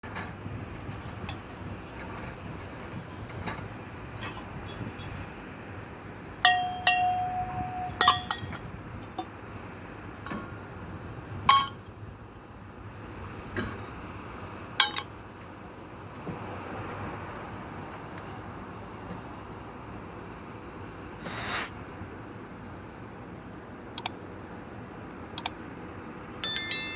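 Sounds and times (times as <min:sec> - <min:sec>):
metallic clinks and clangs: 0:06.4 - 0:08.6, 0:11.5 - 0:11.8, 0:14.8 - 0:15.1, 0:26.4 - 0:26.9.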